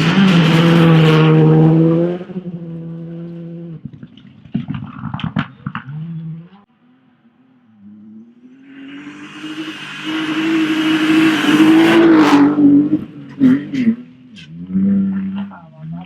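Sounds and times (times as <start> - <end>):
rally car engine at high revs: 0.0 - 6.6, 7.8 - 16.0
exhaust cracks and pops: 3.7 - 6.2.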